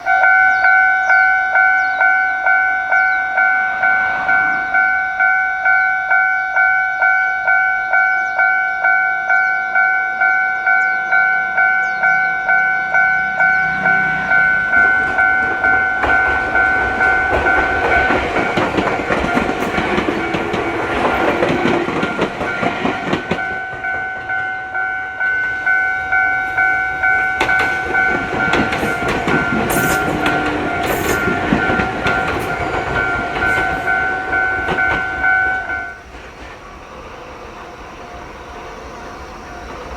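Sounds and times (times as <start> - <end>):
railway crossing bell ringing: 0.0 - 36.1
train wheels clattering over rails: 12.9 - 24.6, 25.3 - 37.1.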